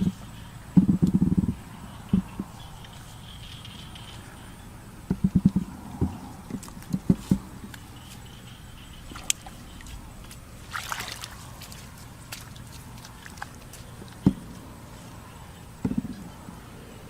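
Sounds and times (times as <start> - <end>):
shallow water sloshing: 5.4 - 15.2.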